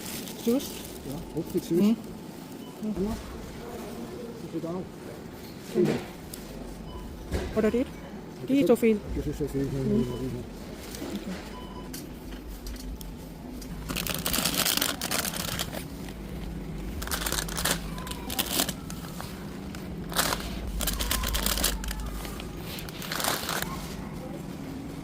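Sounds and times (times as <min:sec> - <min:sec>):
plastic packaging rustling: 0:00.0 - 0:03.2, 0:13.4 - 0:24.6
steady low hum: 0:00.0 - 0:25.0.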